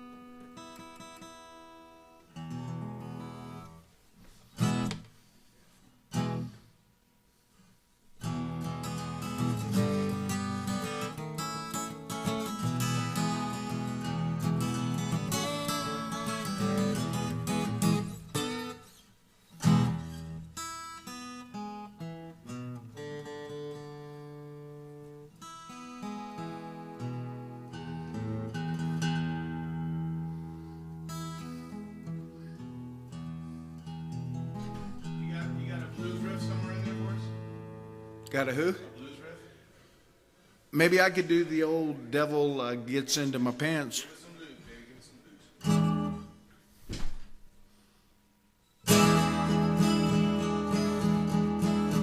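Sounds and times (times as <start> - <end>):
acoustic guitar strumming: 0.0 - 3.9, 4.5 - 5.2, 6.1 - 6.7, 8.2 - 39.2, 45.6 - 46.5, 48.8 - 52.0.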